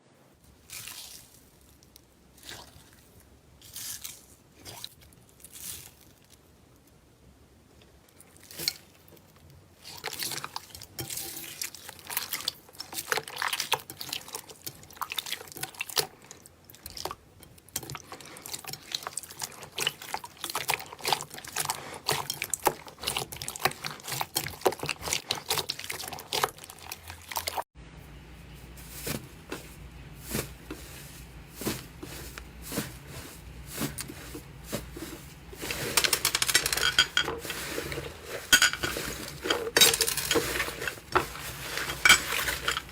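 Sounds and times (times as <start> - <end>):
slime squishing: 0.5 - 6.5, 8.2 - 27.6, 28.5 - 42.9
low steady hum: 27.2 - 42.9.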